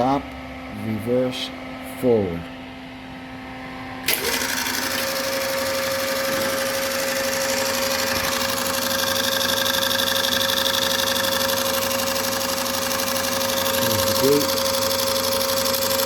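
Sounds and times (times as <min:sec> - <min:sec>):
projector motor hum: 0:00.0 - 0:16.0
film projector mechanism clatter: 0:04.1 - 0:16.0.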